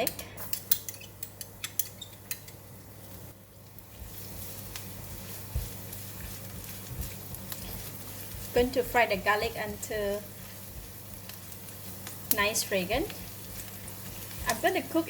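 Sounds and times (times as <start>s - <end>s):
garlic sizzling in oil: 0.0s - 15.0s
utensil scraping a pan: 3.9s - 15.0s.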